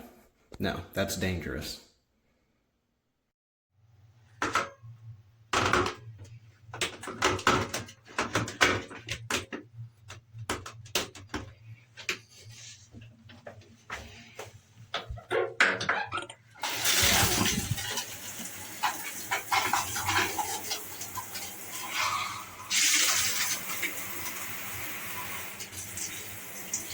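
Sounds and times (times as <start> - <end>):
plastic parts clicking and knocking: 5.5 - 12.2.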